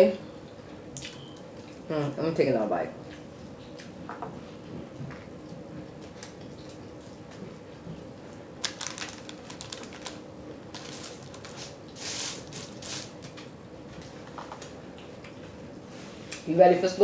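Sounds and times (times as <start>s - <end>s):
chewing and lip-smacking: 4.8s - 8.4s, 14.0s - 15.6s.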